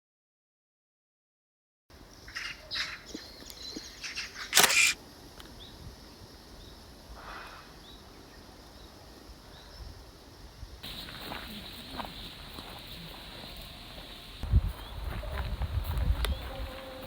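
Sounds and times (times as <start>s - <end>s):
camera shutter release: 4.5s - 5.0s
film camera mechanical clicks: 4.5s - 5.0s.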